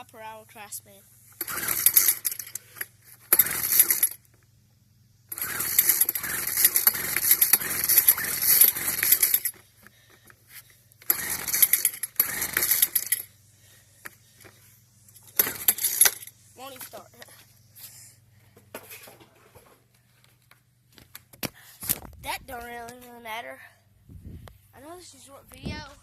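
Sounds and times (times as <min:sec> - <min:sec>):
leaf blower clattering: 0:01.3 - 0:04.5, 0:05.3 - 0:17.4.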